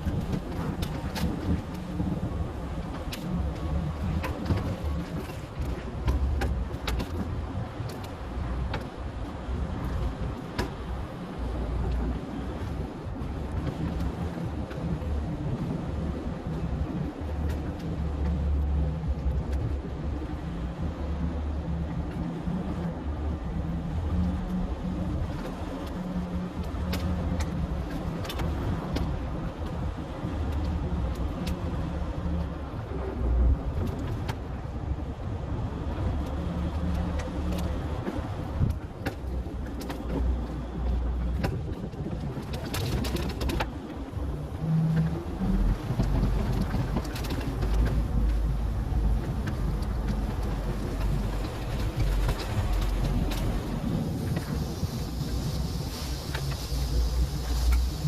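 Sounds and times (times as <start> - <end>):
road noise: 0.0 - 58.0
heavy truck engine running: 16.6 - 58.0
sharp clicks and rattles: 41.2 - 44.0, 45.0 - 54.6.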